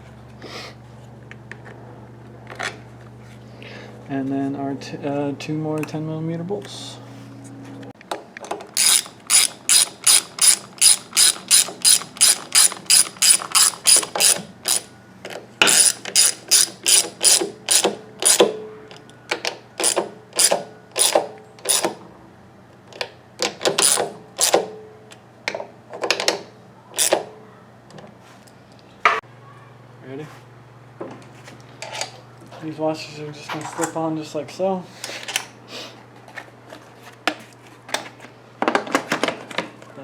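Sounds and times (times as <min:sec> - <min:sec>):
ratchet wrench clicking: 0:08.8 - 0:14.9, 0:15.6 - 0:18.5, 0:19.8 - 0:22.0, 0:23.8 - 0:24.6, 0:27.0 - 0:27.2.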